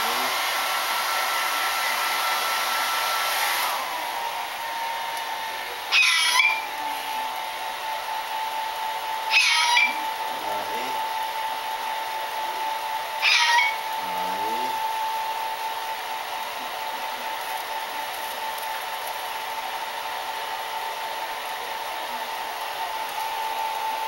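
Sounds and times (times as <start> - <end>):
hair dryer blowing: 0.0 - 24.0
pet animal high calls: 5.9 - 6.7, 9.3 - 10.0, 13.2 - 13.8.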